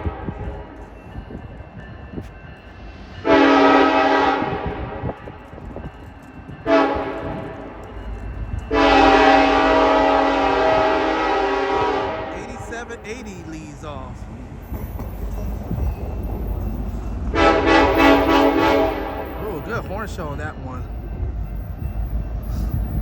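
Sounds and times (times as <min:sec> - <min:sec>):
low rumble of passing train: 0:00.0 - 0:23.0
locomotive air horn blasts: 0:03.2 - 0:05.0, 0:06.7 - 0:07.2, 0:08.7 - 0:13.2, 0:17.3 - 0:19.5.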